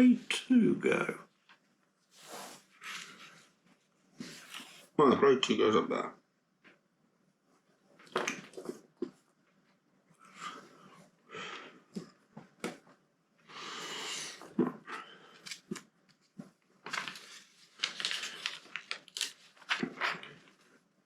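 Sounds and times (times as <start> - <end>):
rustling: 15.3 - 20.8.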